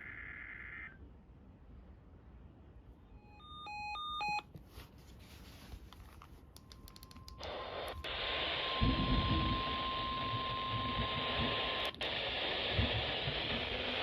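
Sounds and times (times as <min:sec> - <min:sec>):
radio static: 0:07.4 - 0:14.0.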